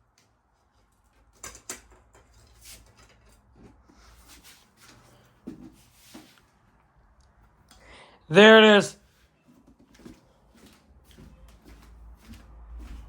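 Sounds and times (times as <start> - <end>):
soft rustling: 9.0 - 13.0.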